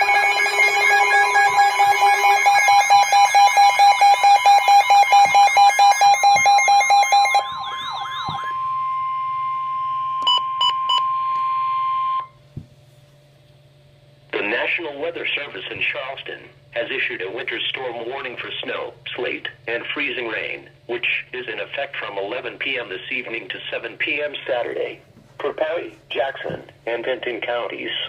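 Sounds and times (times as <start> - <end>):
fast pulsing alert beeps: 0.0 - 11.1
warbling siren-like tones: 0.0 - 12.3
steady alarm tone: 0.0 - 12.4.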